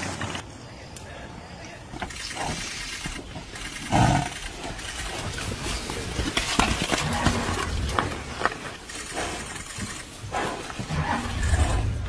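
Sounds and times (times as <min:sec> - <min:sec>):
knocks and scuffling: 0:01.8 - 0:12.0.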